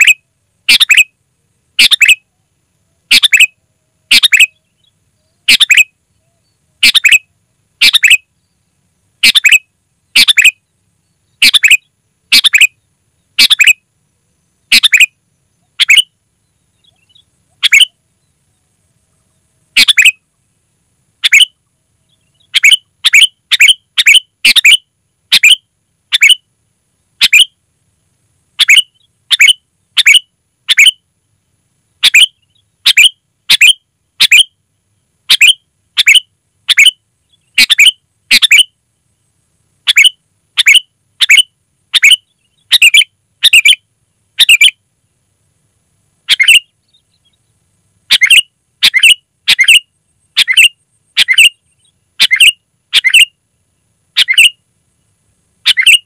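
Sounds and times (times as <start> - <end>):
bulbul chirping: 1.8 - 2.2, 3.1 - 3.5, 4.1 - 4.6, 5.5 - 5.9, 6.8 - 7.2, 7.8 - 8.2, 10.2 - 10.6, 11.4 - 12.8, 13.4 - 13.8, 14.7 - 15.1, 15.8 - 16.1, 19.8 - 20.2, 22.3 - 26.4, 28.6 - 31.0, 32.0 - 34.5, 35.3 - 38.7, 39.9 - 43.8, 46.3 - 46.6, 48.1 - 49.8, 50.4 - 51.6, 52.2 - 53.3, 54.2 - 54.5, 55.7 - 56.0.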